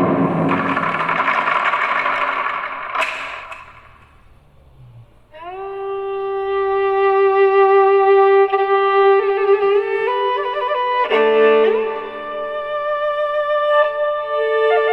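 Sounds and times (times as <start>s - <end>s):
noisy rushing: 0.0s - 4.4s
slow cello melody: 4.7s - 14.9s.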